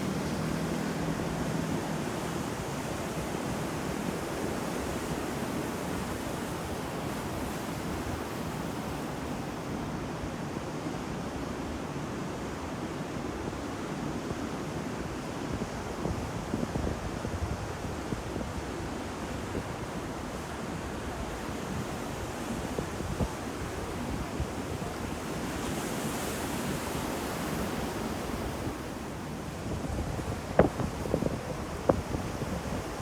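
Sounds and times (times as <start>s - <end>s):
ocean waves breaking on shore: 18.1s - 33.0s.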